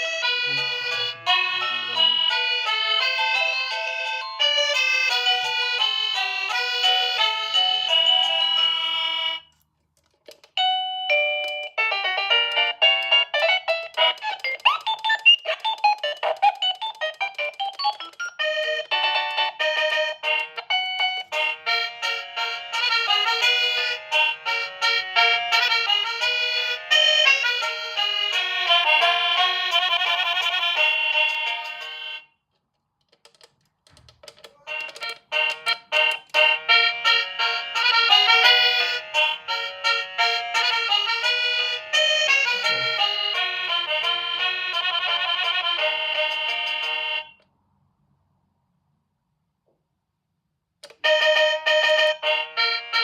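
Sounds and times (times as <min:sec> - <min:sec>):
electronic doorbell chime melody: 0:00.0 - 0:09.4, 0:10.6 - 0:13.9, 0:17.6 - 0:29.2.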